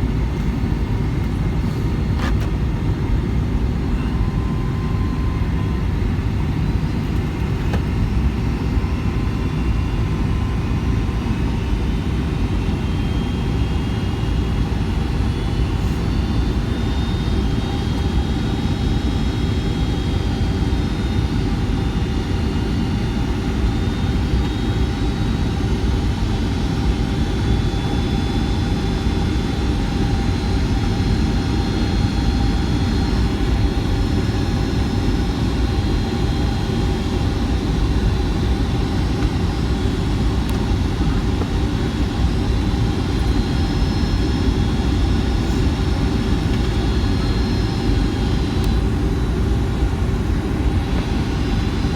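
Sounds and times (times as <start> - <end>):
airplane cabin rumble: 0.0 - 9.4, 30.2 - 51.9.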